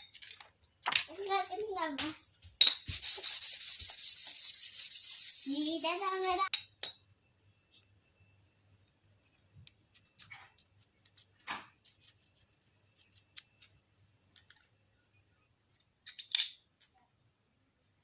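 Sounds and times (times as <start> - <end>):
small metallic clicks and clinks: 14.3 - 14.9, 16.0 - 17.2.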